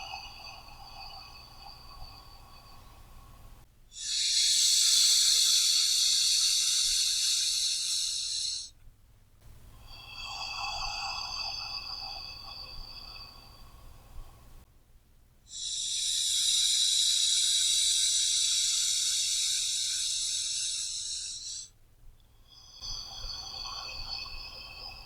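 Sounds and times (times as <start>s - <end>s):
person breathing deeply: 4.0s - 8.7s, 15.5s - 21.7s.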